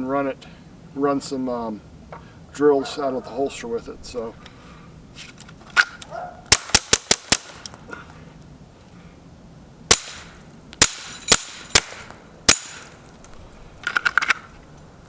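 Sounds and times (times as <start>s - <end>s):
suppressed pistol shots: 9.9s - 13.0s.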